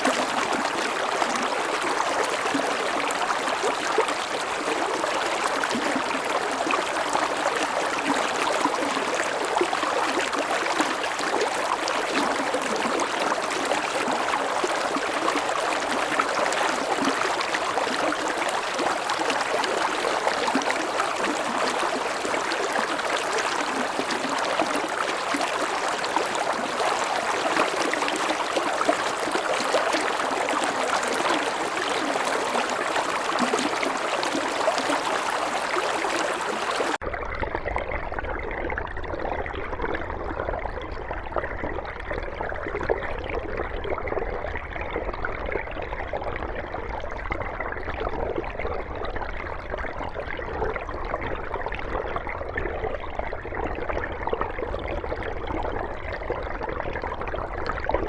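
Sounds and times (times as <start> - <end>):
stream rushing over rocks: 10.7 - 37.0.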